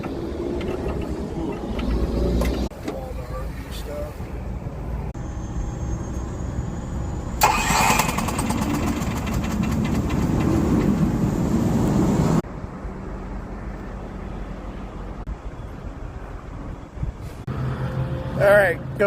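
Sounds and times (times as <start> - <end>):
generator engine starting and running: 5.2 - 12.4.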